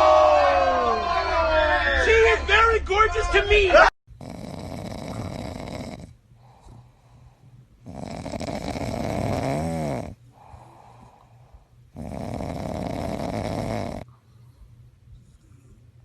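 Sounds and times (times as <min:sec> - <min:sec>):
pet snoring loudly: 0:04.1 - 0:11.3, 0:11.9 - 0:14.1.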